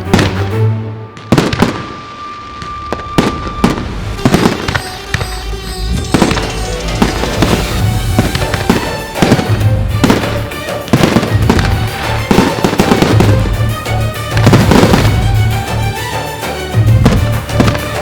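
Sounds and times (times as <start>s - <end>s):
fireworks bangs and crackles: 0.0s - 18.0s
music with steady bass: 5.1s - 18.0s.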